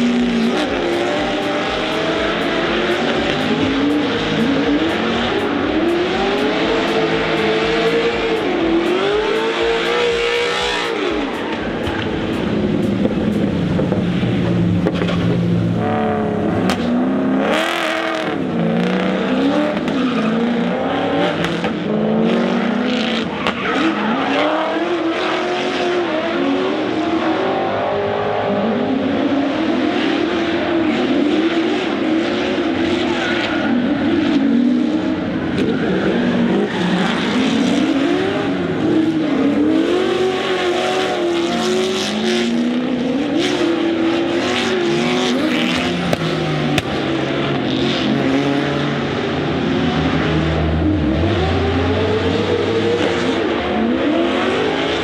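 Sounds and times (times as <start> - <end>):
tyres skidding: 0.0 - 21.8, 32.6 - 50.2
car engine revving: 0.0 - 55.0.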